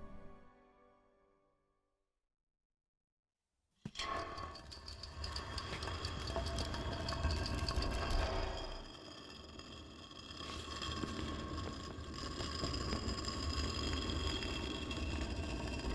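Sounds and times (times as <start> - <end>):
small clicks and rattles: 4.1 - 8.5.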